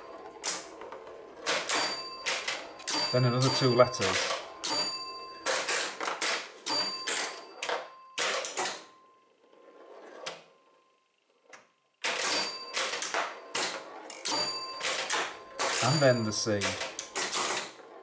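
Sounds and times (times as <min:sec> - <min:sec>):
pinball relays clattering: 0:00.0 - 0:09.1, 0:12.0 - 0:18.0
bell ringing: 0:01.5 - 0:05.8, 0:06.6 - 0:09.2, 0:12.2 - 0:17.3.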